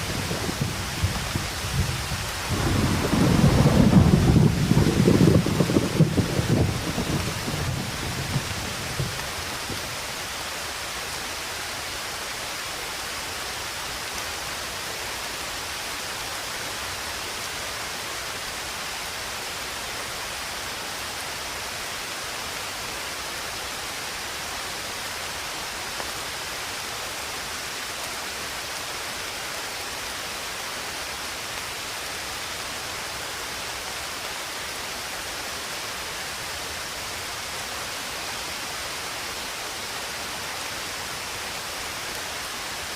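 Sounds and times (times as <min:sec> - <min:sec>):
steady rain hiss: 0:00.0 - 0:42.9
low rumble: 0:02.4 - 0:05.1.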